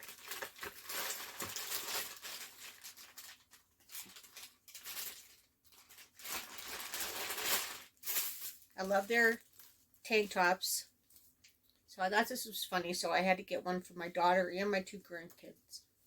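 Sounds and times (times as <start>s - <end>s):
packaging crinkling and rustling: 0.0s - 10.3s.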